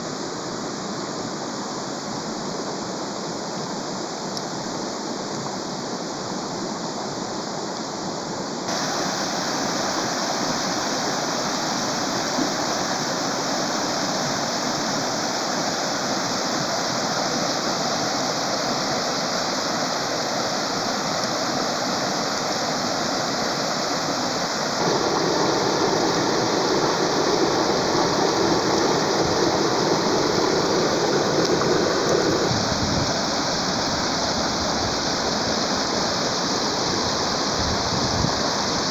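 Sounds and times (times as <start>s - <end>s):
water flowing: 8.7s - 15.7s, 23.5s - 38.9s.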